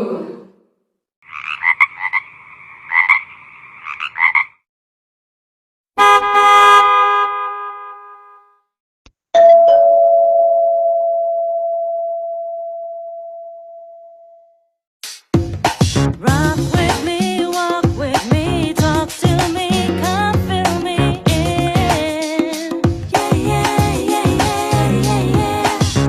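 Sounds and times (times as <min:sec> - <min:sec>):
bright ringtone chime: 0:09.4 - 0:13.9
long ringtone tone: 0:09.4 - 0:14.6.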